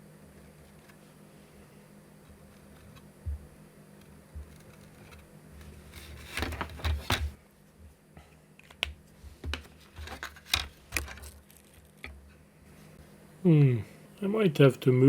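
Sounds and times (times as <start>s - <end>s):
plastic parts clicking and tapping: 5.9s - 7.4s.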